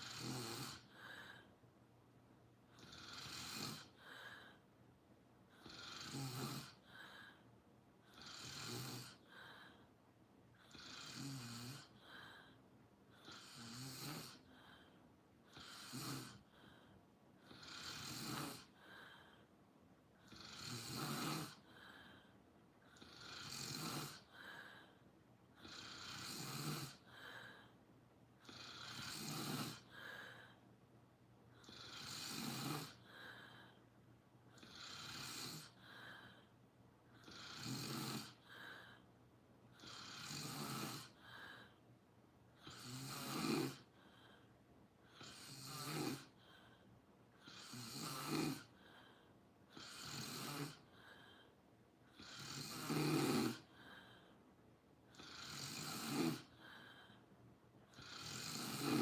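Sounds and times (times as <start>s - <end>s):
person snoring: 0.0s - 1.5s, 2.7s - 4.6s, 5.5s - 7.4s, 8.0s - 9.8s, 10.6s - 16.8s, 17.4s - 19.4s, 20.2s - 22.2s, 22.8s - 25.0s, 25.6s - 27.8s, 28.4s - 30.6s, 31.6s - 33.8s, 34.6s - 36.5s, 37.2s - 39.0s, 39.8s - 41.8s, 42.6s - 44.3s, 45.1s - 46.7s, 47.4s - 48.8s, 49.7s - 51.3s, 52.1s - 54.2s, 55.1s - 57.2s, 57.9s - 59.0s
soft breath out: 0.8s - 1.7s, 3.8s - 4.8s, 18.6s - 19.6s, 24.2s - 25.9s, 27.0s - 27.8s, 29.7s - 30.7s, 32.9s - 34.0s, 35.6s - 36.6s, 38.3s - 39.2s, 41.1s - 42.0s, 53.6s - 54.5s, 56.4s - 57.4s.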